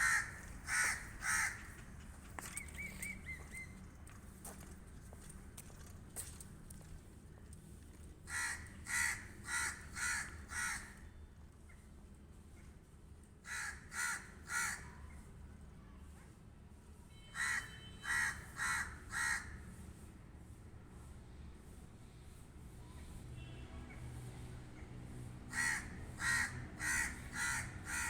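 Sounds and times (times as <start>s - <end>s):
crow cawing: 0.0s - 1.7s, 8.3s - 11.0s, 13.4s - 14.9s, 17.4s - 19.6s, 25.5s - 28.0s.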